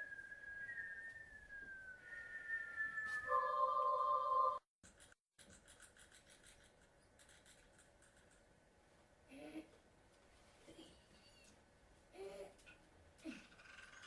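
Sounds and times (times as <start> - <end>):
whistle sliding down in pitch: 0.0 - 4.6.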